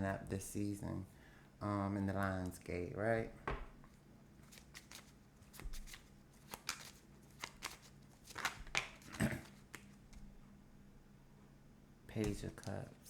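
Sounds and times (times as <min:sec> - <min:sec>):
cards being shuffled: 0:03.9 - 0:10.3.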